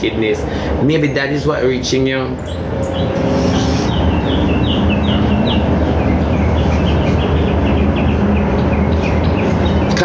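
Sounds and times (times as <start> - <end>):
bird chirping: 2.3 - 10.0.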